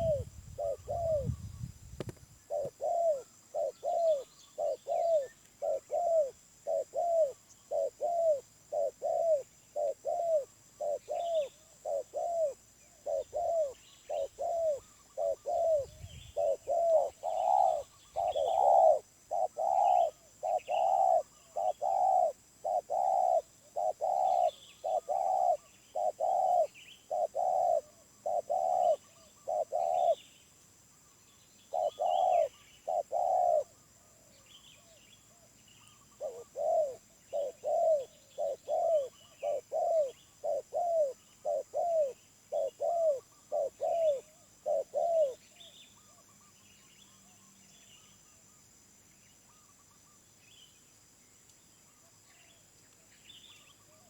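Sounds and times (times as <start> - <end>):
dove cooing: 0.0 - 1.5, 2.4 - 30.2, 31.7 - 34.2, 36.1 - 46.1
faint small bird chirps: 0.0 - 54.0.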